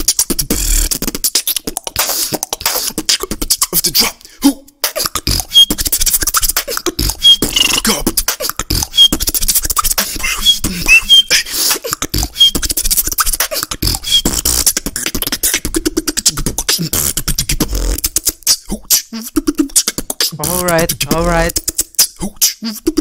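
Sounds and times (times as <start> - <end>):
person beatboxing: 0.0 - 23.0
high squeaky chirps: 7.1 - 7.9, 10.0 - 11.5.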